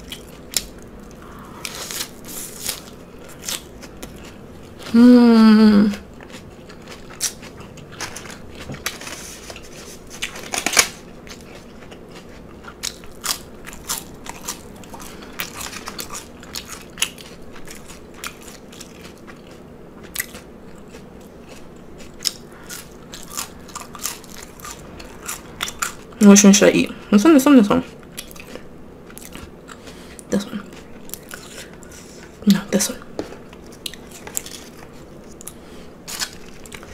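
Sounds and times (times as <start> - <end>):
person chewing crunchy food: 0.0 - 26.2, 27.8 - 32.4, 33.1 - 36.9.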